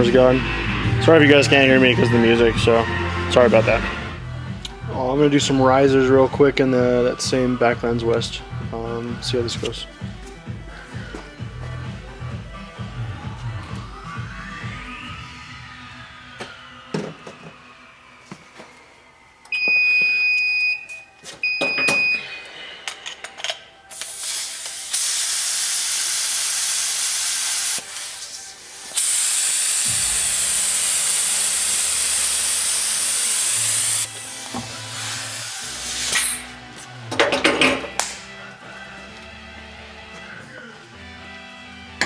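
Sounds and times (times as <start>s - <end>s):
spray hissing: 24.0s - 36.4s.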